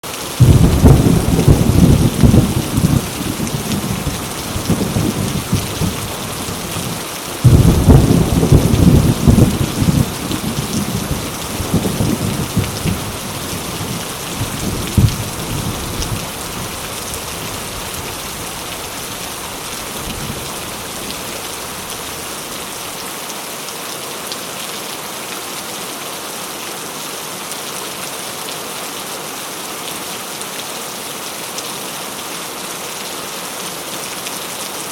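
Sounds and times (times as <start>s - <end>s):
heavy rain pouring: 0.0s - 34.9s
thunder rumbling: 0.4s - 22.4s.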